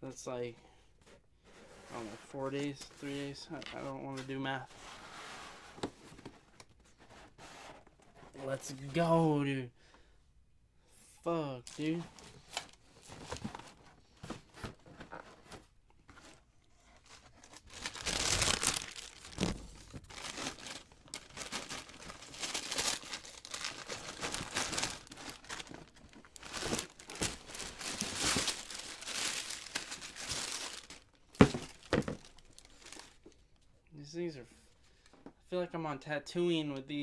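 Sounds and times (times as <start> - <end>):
paper packaging crinkling and tearing: 17.0 - 33.2.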